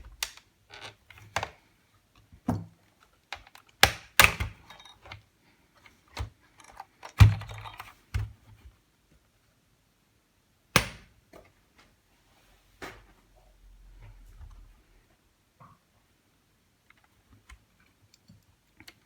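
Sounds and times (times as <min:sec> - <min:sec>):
plastic and tools clicking: 0:00.0 - 0:02.3, 0:03.0 - 0:05.2, 0:05.8 - 0:08.3.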